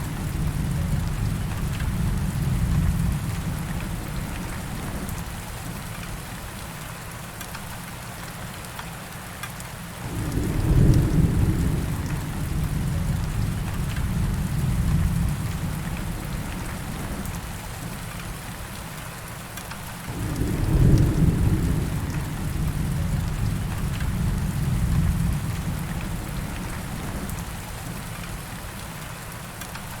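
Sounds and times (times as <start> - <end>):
thunder rumbling: 0.0 - 6.0, 9.9 - 18.4, 20.0 - 28.6
steady rainfall: 0.0 - 30.0.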